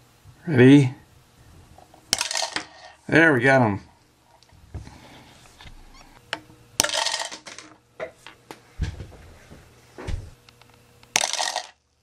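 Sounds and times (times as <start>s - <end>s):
toy pieces clattering: 2.1s - 3.0s, 6.8s - 7.7s, 11.1s - 11.8s.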